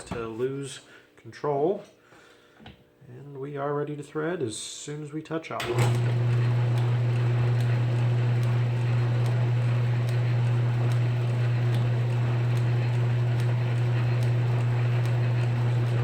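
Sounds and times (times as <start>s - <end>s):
metal lathe humming: 5.6s - 16.0s.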